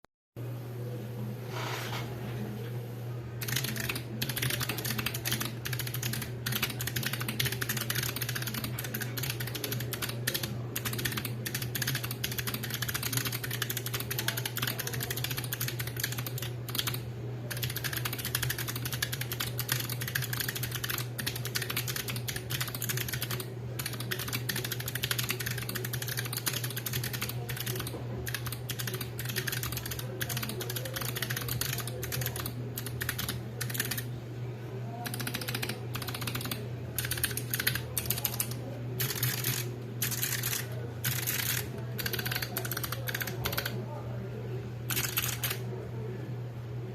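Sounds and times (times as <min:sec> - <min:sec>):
steady low hum: 0:00.4 - 0:46.9
fast typing on mechanical keyboard: 0:03.4 - 0:34.1, 0:35.0 - 0:43.8, 0:44.9 - 0:45.6.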